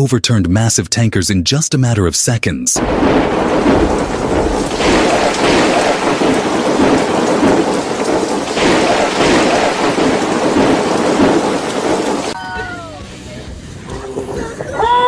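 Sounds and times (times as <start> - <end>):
heavy rain: 2.8 - 13.8
storm wind: 2.8 - 15.0.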